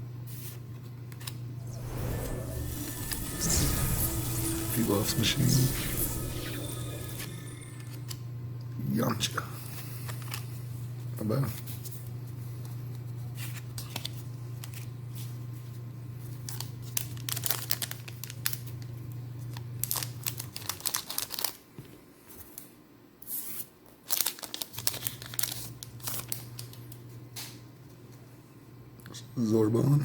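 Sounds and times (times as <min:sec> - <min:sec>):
low hum: 0:01.5 - 0:08.6
foil pack tearing and crinkling: 0:24.0 - 0:26.4.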